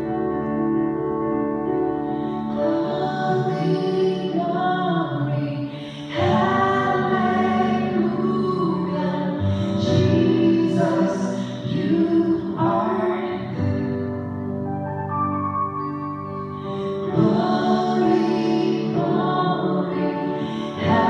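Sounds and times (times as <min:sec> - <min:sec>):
man and woman singing duet: 0:02.6 - 0:13.9, 0:16.8 - 0:21.0.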